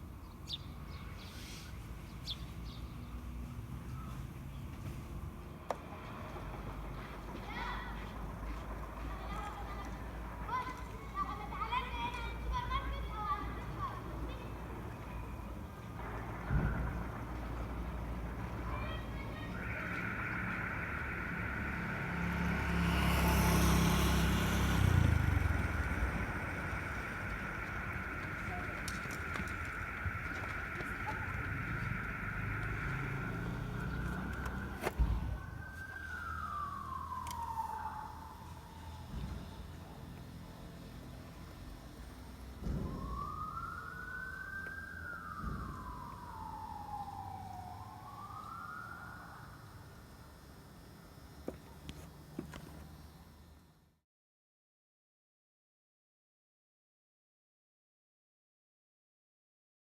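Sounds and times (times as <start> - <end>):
motor vehicle passing: 0.5 - 49.8
steady high hum: 10.1 - 39.0
low rumble: 14.2 - 37.2.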